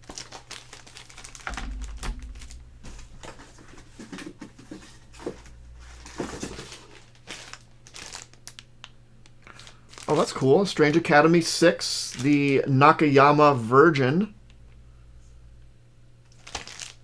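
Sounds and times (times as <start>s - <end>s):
low handling rumble: 1.1s - 3.9s.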